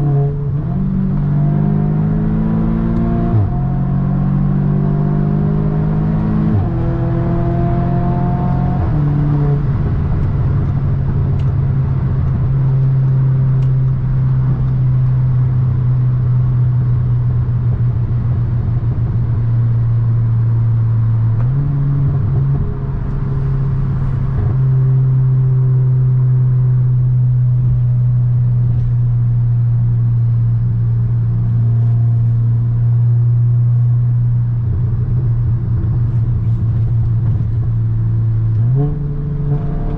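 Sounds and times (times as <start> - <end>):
car engine and exhaust driving: 0.0 - 39.9.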